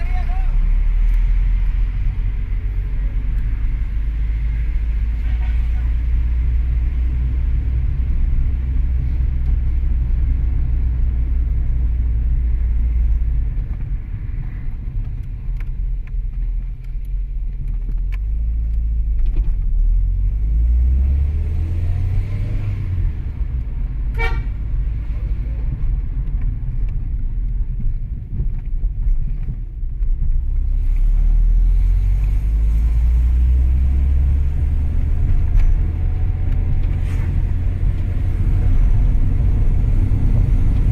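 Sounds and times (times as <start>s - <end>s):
car engine and road rumble: 0.0s - 40.9s
car horn toot: 24.1s - 24.6s.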